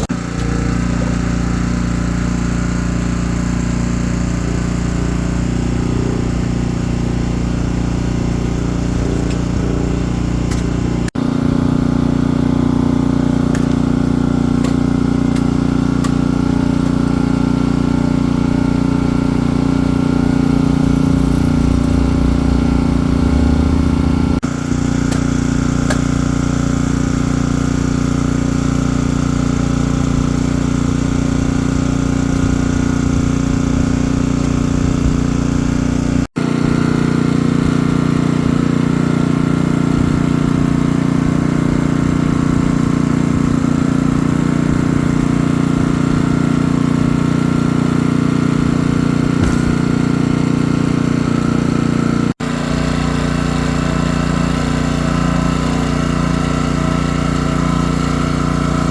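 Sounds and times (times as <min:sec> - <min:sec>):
engine running steadily: 0:00.0 - 0:58.9.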